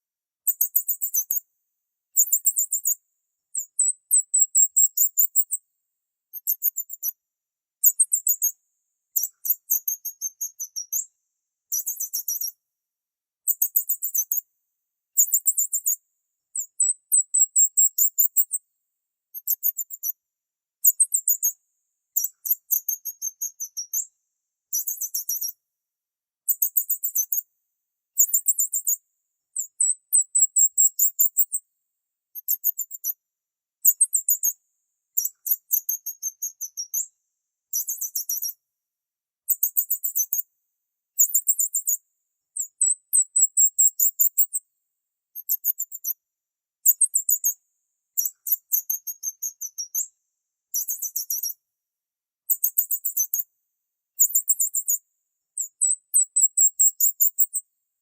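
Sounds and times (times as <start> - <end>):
small bird chirping: 0.4 - 1.5, 2.1 - 5.6, 6.3 - 7.2, 7.8 - 11.1, 11.7 - 12.6, 13.4 - 14.5, 15.1 - 18.6, 19.3 - 20.2, 20.8 - 24.1, 24.7 - 25.6, 26.4 - 27.5, 28.2 - 31.6, 32.3 - 33.2, 33.8 - 37.1, 37.7 - 38.6, 39.5 - 40.5, 41.2 - 44.6, 45.3 - 46.2, 46.8 - 50.1, 50.7 - 51.6, 52.5 - 53.5, 54.2 - 57.7.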